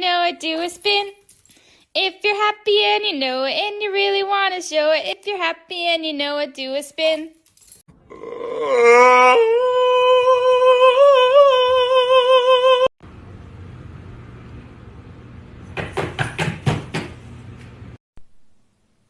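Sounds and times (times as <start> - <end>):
person singing long held note: 8.1 - 12.9.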